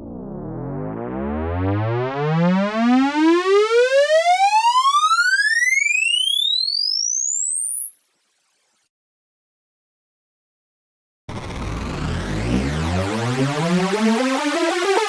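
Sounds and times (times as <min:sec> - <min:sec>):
synthesized riser: 0:11.3 - 0:15.0.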